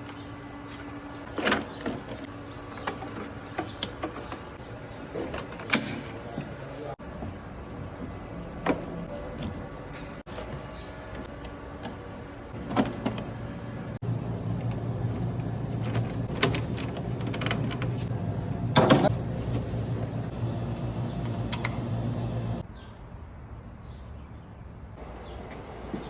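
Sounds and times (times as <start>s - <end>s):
air purifier fan humming: 12.4s - 22.6s.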